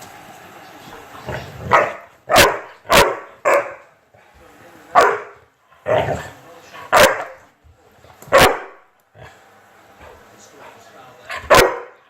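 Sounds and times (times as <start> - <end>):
dog barking: 1.7 - 3.9, 5.0 - 5.4, 6.9 - 7.4, 8.3 - 8.8, 11.3 - 12.0.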